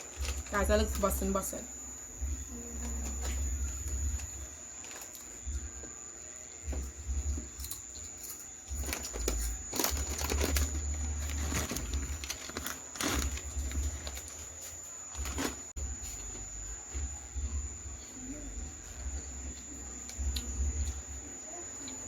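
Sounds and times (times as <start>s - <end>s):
faint steady high whine: 0.0s - 22.0s
crunchy sandwich chewing: 6.7s - 16.8s.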